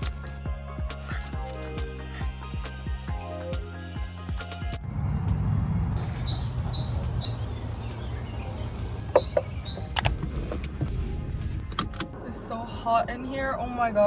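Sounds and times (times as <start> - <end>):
background music: 0.0 - 14.0
steady low rumble: 4.8 - 14.0
high bird chirps: 6.0 - 10.1.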